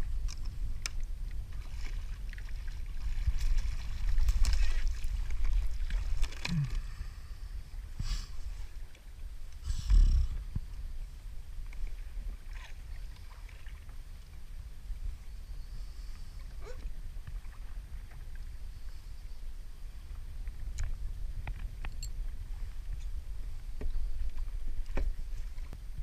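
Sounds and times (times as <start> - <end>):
water splashing against hull: 0.0 - 9.6, 10.4 - 15.2.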